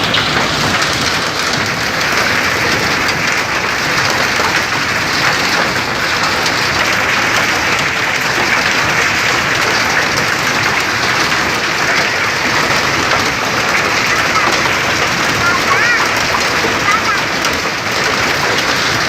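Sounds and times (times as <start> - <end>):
heavy rain hissing: 0.0 - 19.0.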